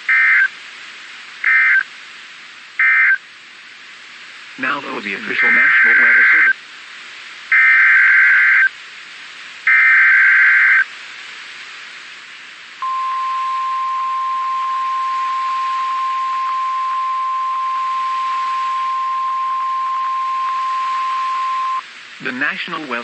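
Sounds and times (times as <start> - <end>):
faint radio hiss: 0.0 - 23.0
data bursts: 5.3 - 6.6, 12.8 - 21.8
steady warning alarm tone: 12.8 - 21.8.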